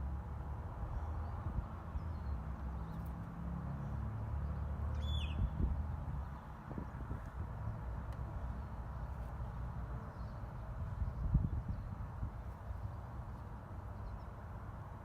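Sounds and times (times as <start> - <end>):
bird chirp: 0.9 - 7.0.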